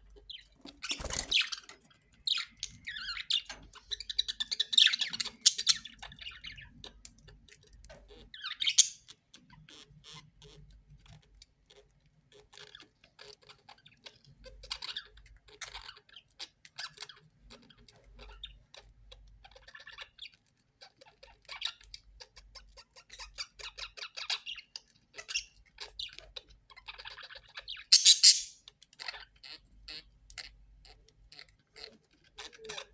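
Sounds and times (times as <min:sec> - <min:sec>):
parrots chattering: 0:00.8 - 0:01.7, 0:02.3 - 0:06.6, 0:08.4 - 0:09.0, 0:27.0 - 0:28.6, 0:31.3 - 0:32.9
parrot squawks: 0:27.9 - 0:28.6.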